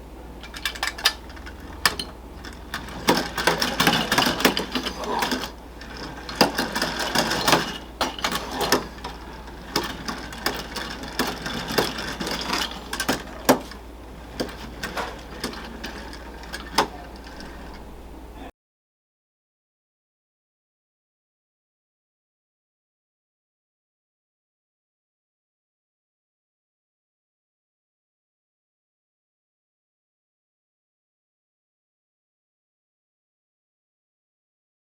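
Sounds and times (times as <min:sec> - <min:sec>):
clockwork toy clattering: 0:00.4 - 0:18.4.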